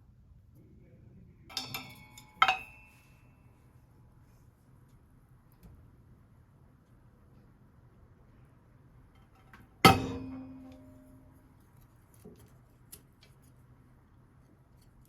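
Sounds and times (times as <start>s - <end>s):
kitchenware clanking: 1.5s - 2.8s, 9.9s - 11.3s.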